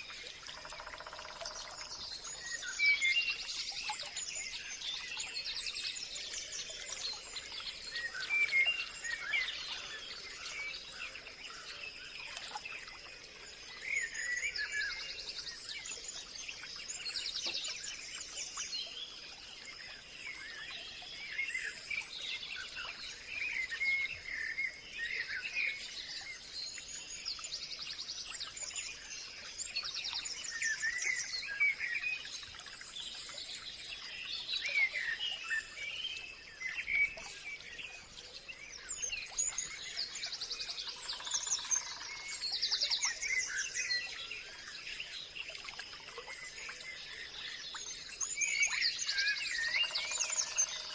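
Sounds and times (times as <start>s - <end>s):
birds chirping and singing: 48.4s - 50.9s.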